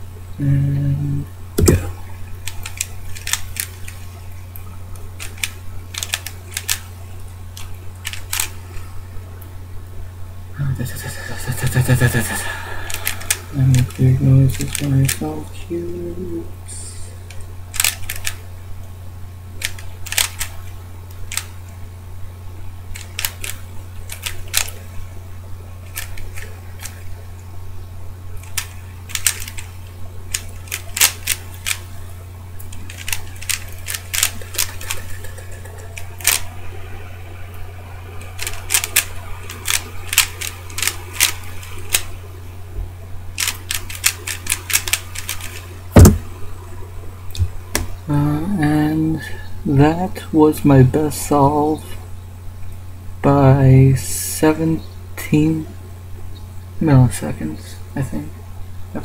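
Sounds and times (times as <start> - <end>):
steady low hum: 0.0 - 59.0
faint vocal noises: 0.4 - 2.2, 10.5 - 17.3
loud thump: 1.6 - 2.0, 45.9 - 46.4
plastic puzzle cube clicking: 5.2 - 6.8, 7.6 - 8.5, 17.3 - 18.4, 19.6 - 20.5, 23.0 - 24.7, 28.4 - 29.7, 30.3 - 31.8, 38.4 - 42.1, 43.4 - 45.6.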